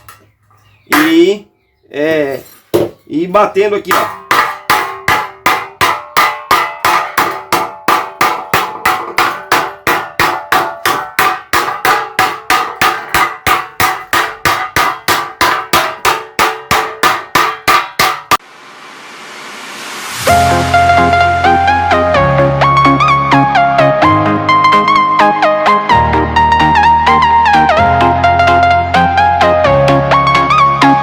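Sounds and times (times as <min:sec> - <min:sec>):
hammer ringing on steel sheet: 0:03.8 - 0:18.4.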